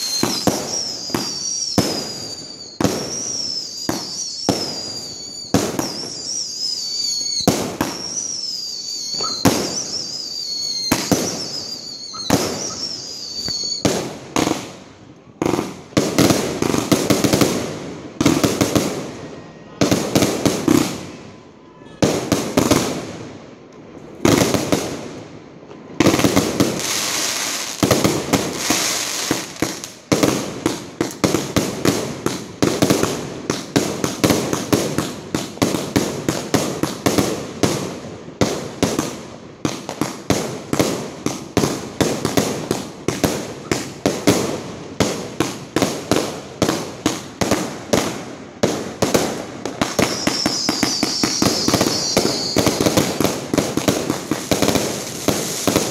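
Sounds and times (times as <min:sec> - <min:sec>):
fireworks cake firing: 0:26.1 - 0:55.9.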